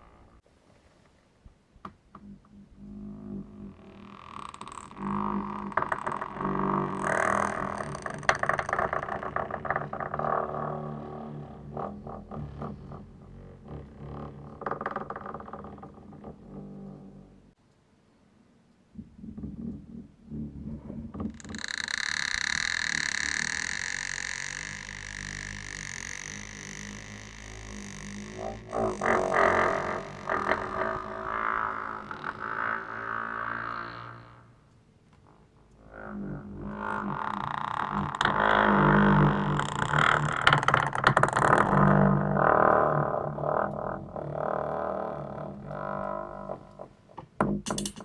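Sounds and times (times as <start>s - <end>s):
door hinge creaking: 2.2s - 17.6s, 19.0s - 48.0s.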